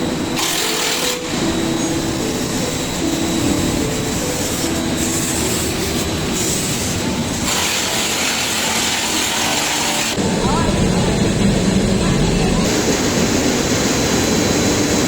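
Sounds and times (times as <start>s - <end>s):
machinery rattling and rumbling: 7.0s - 15.0s.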